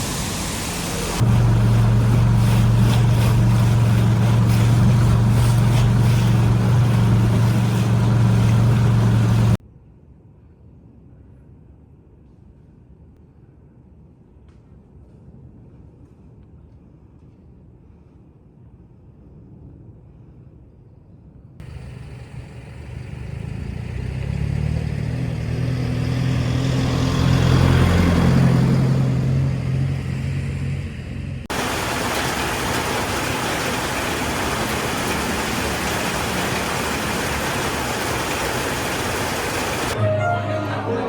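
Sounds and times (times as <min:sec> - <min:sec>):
motor engine humming: 0:00.0 - 0:09.6, 0:21.6 - 0:41.0
steady hiss: 0:31.5 - 0:40.0.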